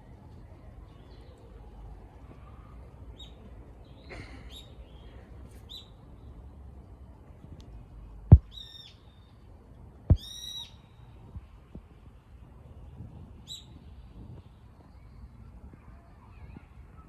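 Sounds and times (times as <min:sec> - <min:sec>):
loud thumps: 0:08.3 - 0:08.5.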